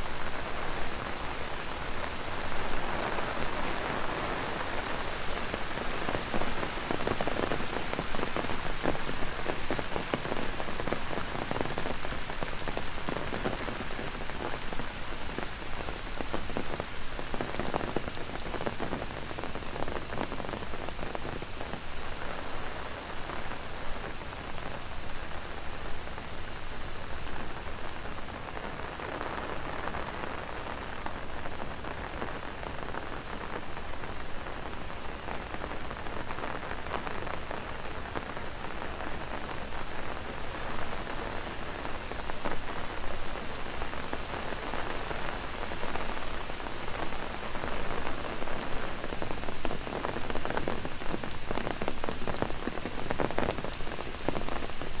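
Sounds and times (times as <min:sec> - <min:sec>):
cicadas droning: 0:00.0 - 0:55.0
heavy rain falling: 0:35.2 - 0:55.0.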